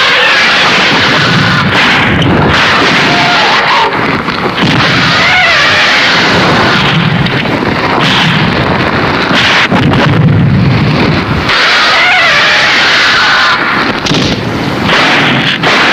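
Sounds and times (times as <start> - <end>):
monster screeching roars: 0.0 - 7.2, 11.5 - 13.8
deep rumble: 0.0 - 15.9.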